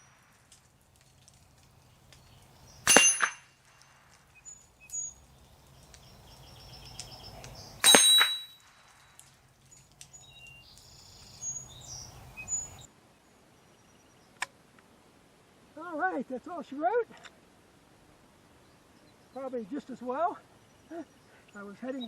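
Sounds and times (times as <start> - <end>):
birds chirping faintly: 0.0 - 22.0
rifle shots: 2.9 - 3.4.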